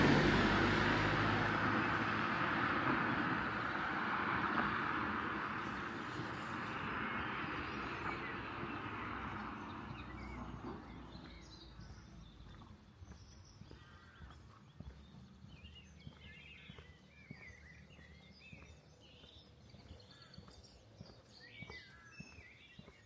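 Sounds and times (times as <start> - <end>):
vehicle driving away: 0.0 - 12.8.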